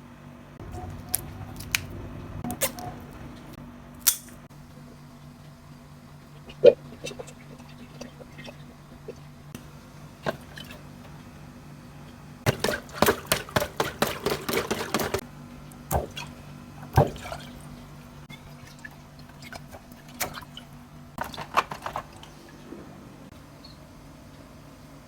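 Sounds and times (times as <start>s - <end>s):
faint steady hum: 0.0s - 25.0s
water dripping and splashing: 12.5s - 22.3s.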